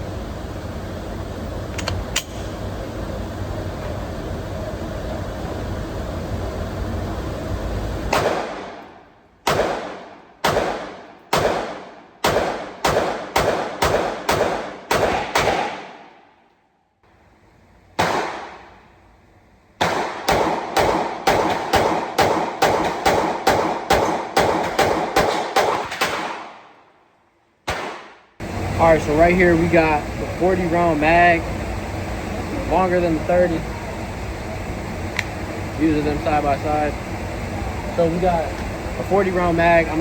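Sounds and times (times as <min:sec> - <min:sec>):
pistol gunshots: 0:08.1 - 0:16.1, 0:18.0 - 0:18.7, 0:19.8 - 0:26.8, 0:27.6 - 0:28.3.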